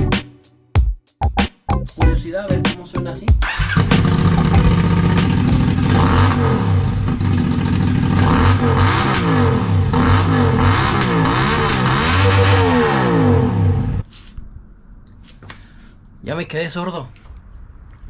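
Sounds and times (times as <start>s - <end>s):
motorcycle engine revving: 3.4s - 14.0s.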